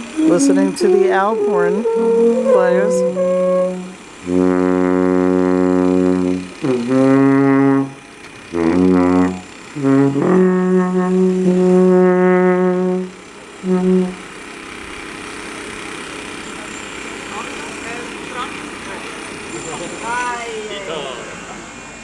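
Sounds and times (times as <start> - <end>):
alphorns playing slow melody: 0.0 - 8.0, 8.6 - 14.5.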